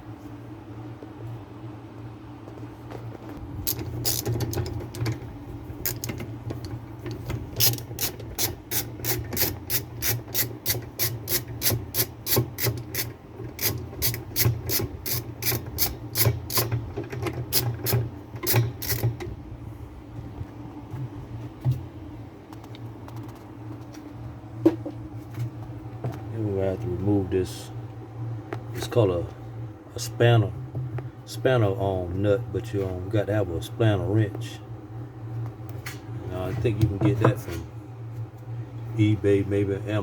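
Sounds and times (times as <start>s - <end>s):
ratchet wrench clicking: 3.6s - 4.7s, 5.8s - 6.2s, 7.6s - 16.7s, 17.5s - 19.1s.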